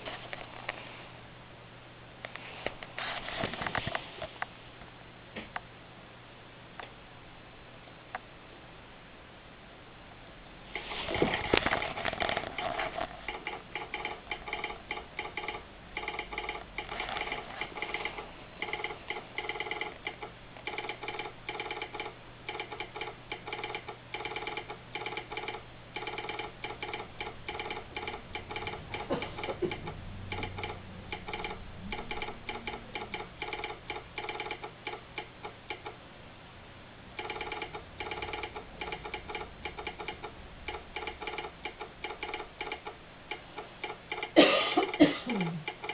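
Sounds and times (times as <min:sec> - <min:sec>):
telegraph sounder clicking: 0:10.8 - 0:36.0, 0:37.2 - 0:45.9.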